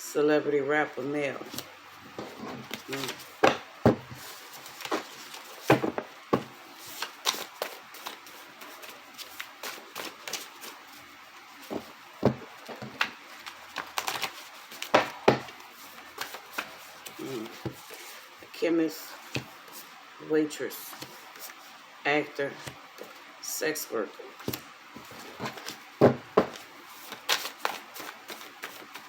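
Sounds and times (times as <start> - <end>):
cards slapping: 1.5 - 10.8, 26.4 - 29.0
cards being shuffled: 1.5 - 18.2, 24.4 - 29.0.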